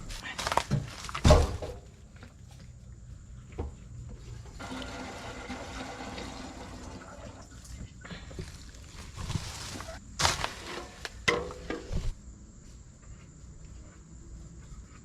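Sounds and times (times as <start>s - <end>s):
gasoline pouring: 4.6s - 7.7s.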